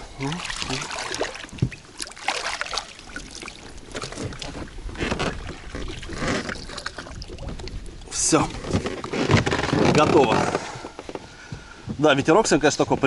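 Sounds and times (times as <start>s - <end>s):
wind rumble on microphone: 3.8s - 10.6s.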